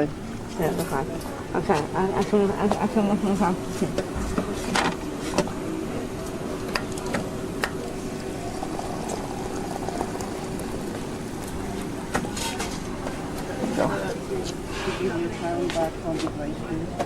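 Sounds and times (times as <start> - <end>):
water pouring into teapot: 7.8 - 12.0.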